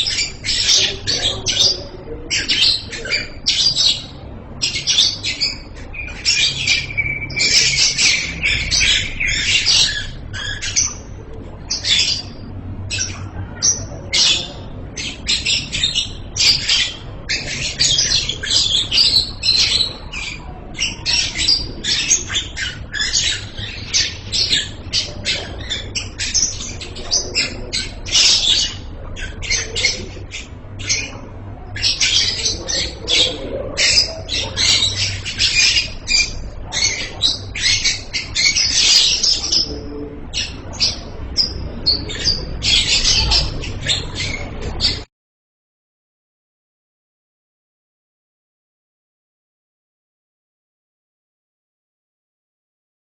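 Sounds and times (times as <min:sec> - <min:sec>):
lovebird chirping: 0:00.0 - 0:39.7
whistled bird note: 0:06.6 - 0:08.7.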